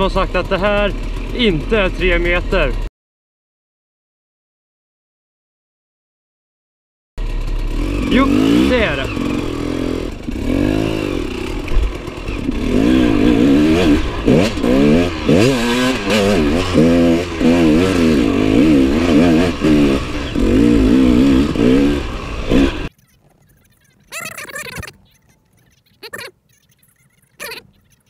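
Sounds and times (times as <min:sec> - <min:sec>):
dirt bike engine revving: 0:00.0 - 0:02.9, 0:07.2 - 0:23.0.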